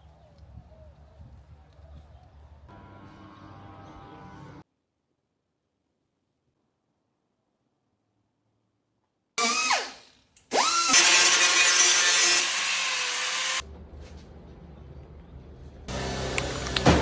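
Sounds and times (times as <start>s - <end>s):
power tool grinding hiss: 9.4s - 13.6s, 15.9s - 17.0s.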